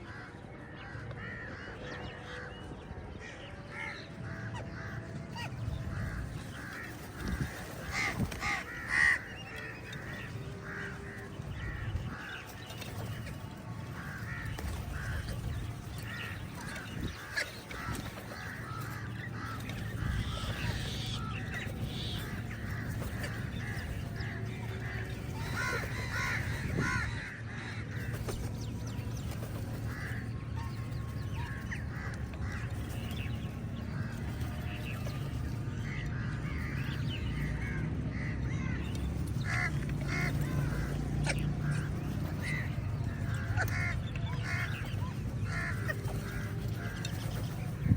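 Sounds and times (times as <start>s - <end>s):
steady low rumble: 2.4s - 47.9s
crows cawing: 5.9s - 12.7s, 13.8s - 28.2s, 29.9s - 30.5s, 35.8s - 47.7s.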